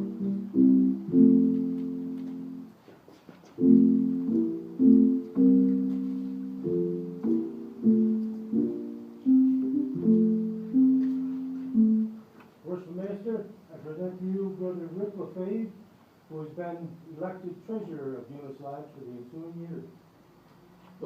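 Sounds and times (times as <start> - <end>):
keyboard playing low chords: 0.0 - 2.8, 3.6 - 12.3.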